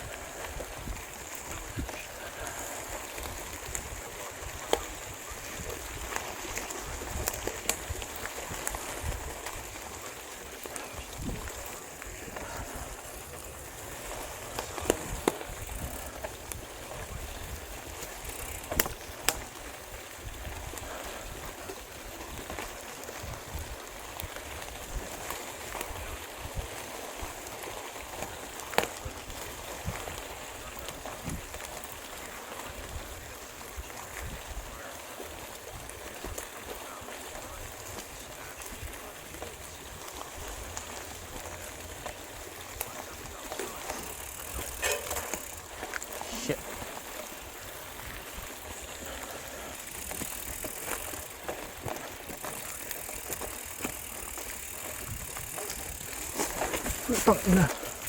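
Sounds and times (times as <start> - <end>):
wind buffeting microphone: 0.0 - 27.4, 29.0 - 31.7, 32.6 - 36.4, 46.6 - 58.0
bicycle rattling clicks: 0.0 - 58.0
bicycle rolling on road: 0.0 - 58.0.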